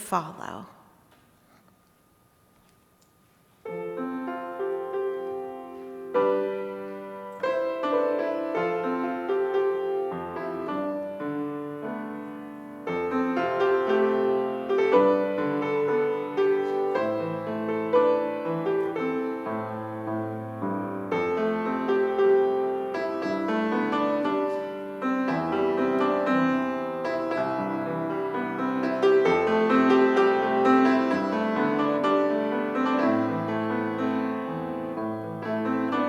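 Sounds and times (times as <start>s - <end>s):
slow piano piece: 3.4s - 36.0s.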